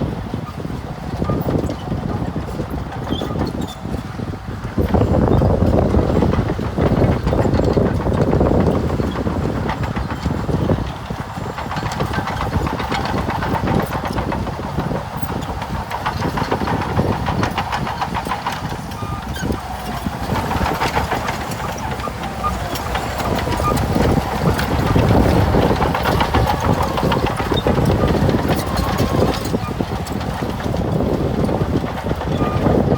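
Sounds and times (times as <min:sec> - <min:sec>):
heavy machine engine running: 0:00.0 - 0:32.9.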